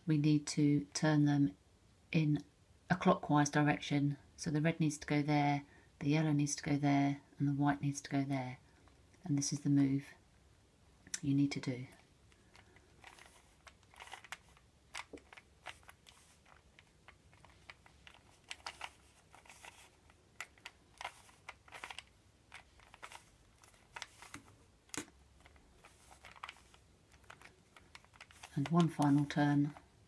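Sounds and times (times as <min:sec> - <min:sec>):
puzzle cube clicking: 0:12.4 - 0:29.8.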